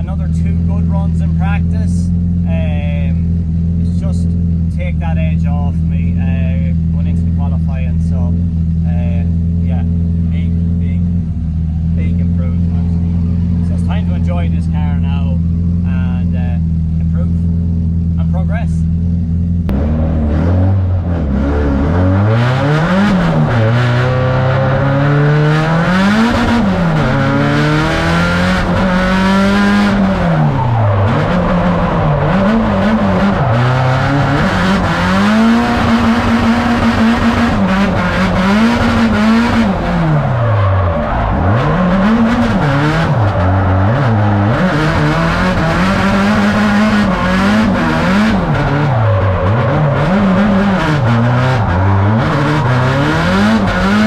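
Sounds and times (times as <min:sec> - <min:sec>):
car engine revving hard: 0:19.6 - 0:54.0.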